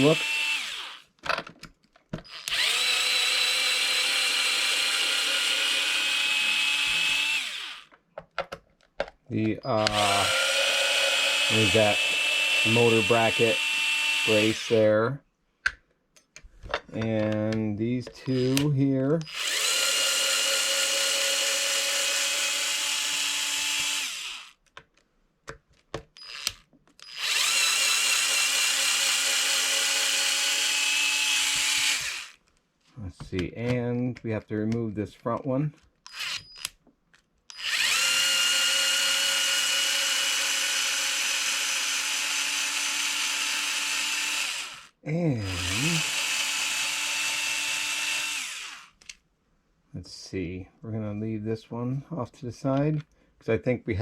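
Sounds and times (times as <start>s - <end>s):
power driver motor whine: 0.0s - 1.0s, 2.3s - 7.9s, 9.8s - 14.7s, 18.2s - 24.5s, 26.2s - 32.4s, 36.1s - 36.7s, 37.5s - 48.9s
screwdriver bit clicks: 2.2s - 3.8s, 18.2s - 20.0s, 26.2s - 28.7s, 36.0s - 36.8s.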